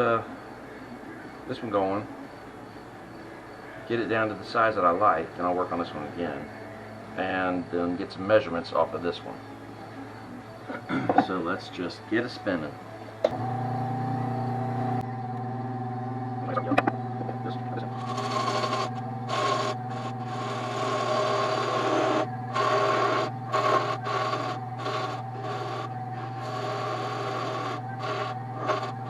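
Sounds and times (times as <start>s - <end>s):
lathe motor humming: 11.7s - 29.0s
tool scraping spinning wood: 17.7s - 29.0s.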